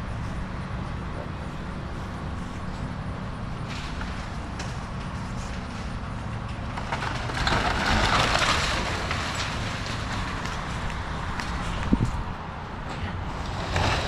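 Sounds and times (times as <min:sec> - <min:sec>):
excavator diesel engine running: 0:00.0 - 0:14.0
timber and debris crashing down: 0:06.6 - 0:10.7.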